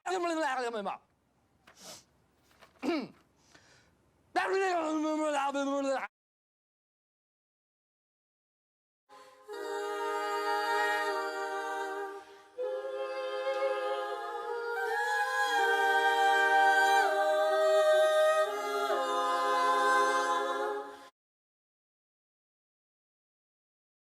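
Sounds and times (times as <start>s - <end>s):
choir singing held chords: 9.1s - 21.1s.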